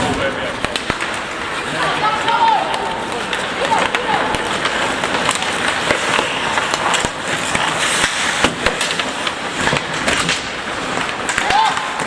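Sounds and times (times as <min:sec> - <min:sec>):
skates scraping ice: 0:00.0 - 0:12.0
sticks and puck knocking: 0:02.2 - 0:12.0.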